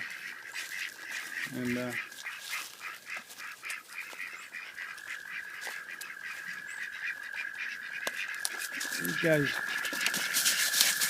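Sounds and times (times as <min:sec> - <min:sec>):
ducks quacking: 0:00.0 - 0:11.0.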